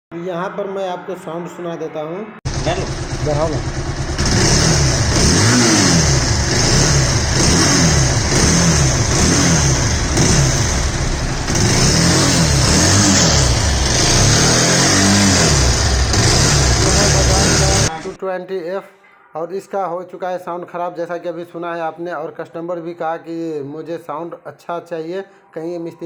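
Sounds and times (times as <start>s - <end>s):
motorcycle engine revving: 2.5s - 18.2s.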